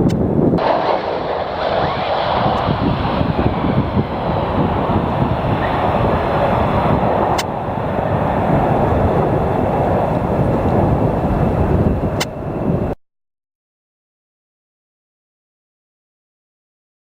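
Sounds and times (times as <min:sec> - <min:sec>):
fighter jet engines rumbling: 0:00.0 - 0:13.0.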